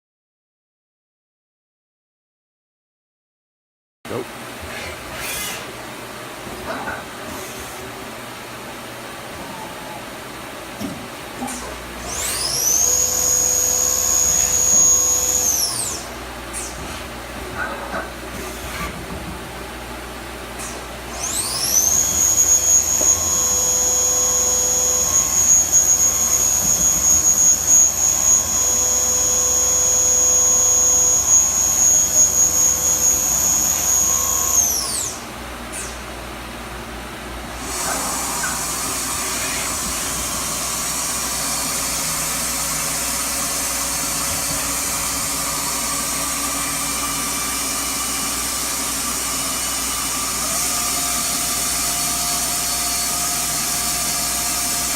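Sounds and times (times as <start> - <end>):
lathe spindle whine: 12.0 - 16.7, 21.1 - 35.2, 37.6 - 54.9.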